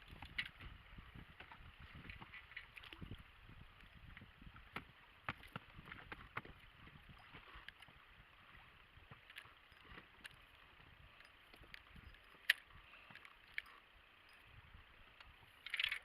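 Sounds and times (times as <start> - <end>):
small clicks: 9.1 - 14.5, 15.1 - 16.0.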